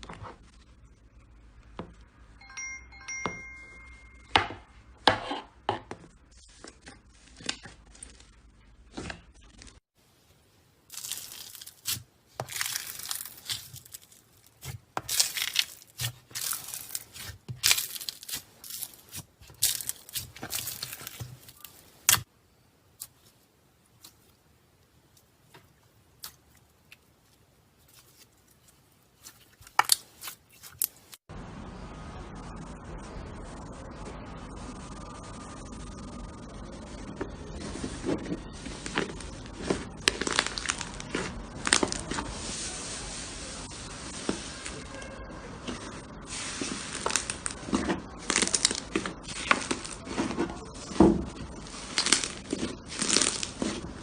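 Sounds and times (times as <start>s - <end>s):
chime-like tone: 2.4s - 4.6s.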